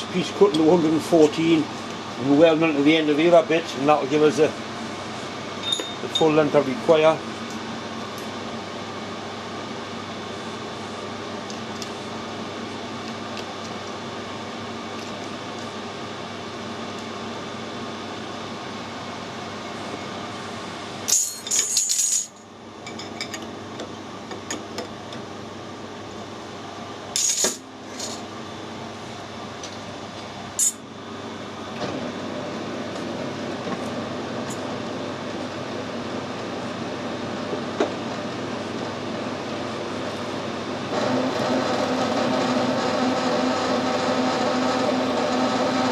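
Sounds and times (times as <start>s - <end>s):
machine hum and hiss: 0.0s - 45.9s
metal pieces clinking: 21.1s - 22.4s
steady machine noise: 39.5s - 45.9s.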